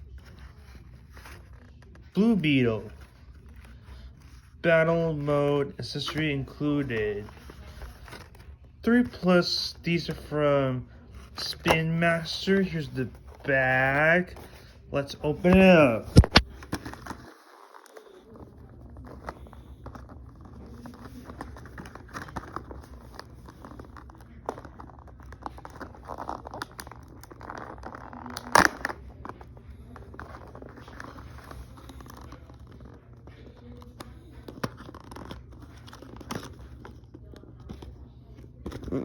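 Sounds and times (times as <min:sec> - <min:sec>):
bag crinkling and tearing: 0:23.5 - 0:29.4.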